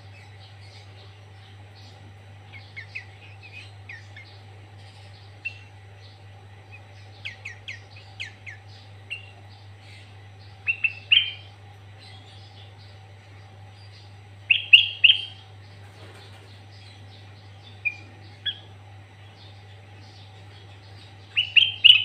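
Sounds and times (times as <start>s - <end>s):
steady low hum: 0.0s - 22.0s
bulbul singing whistled notes: 21.3s - 22.0s.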